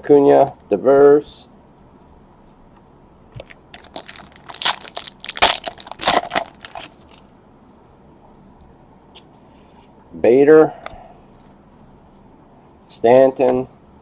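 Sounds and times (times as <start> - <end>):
wrapper crinkling and tearing: 3.4 - 7.2.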